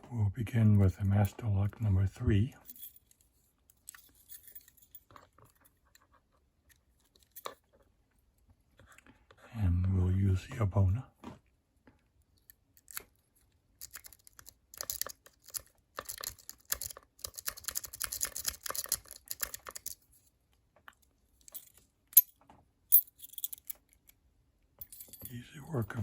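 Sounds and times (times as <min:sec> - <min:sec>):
padlock clicking open: 0:13.8 - 0:19.9
lock pick scrubbing in padlock: 0:13.8 - 0:20.0.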